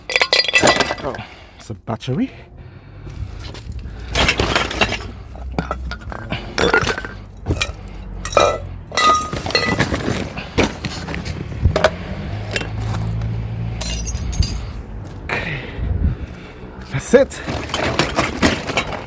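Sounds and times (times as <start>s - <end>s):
scrap metal clinking and clattering: 0.0s - 1.6s, 3.4s - 14.8s, 17.3s - 19.0s.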